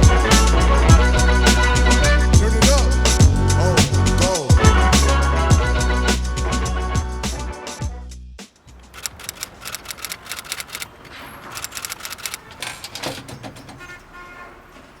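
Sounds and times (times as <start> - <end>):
sharp mechanical clicks: 8.9 - 13.2.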